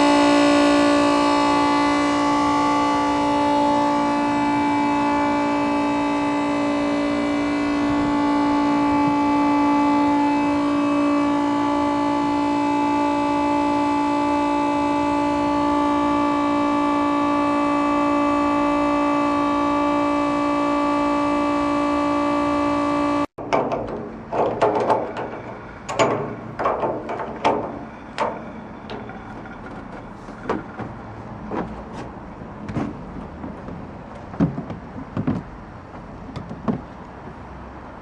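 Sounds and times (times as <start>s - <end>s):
electric fuel pump whining: 0.0s - 23.3s.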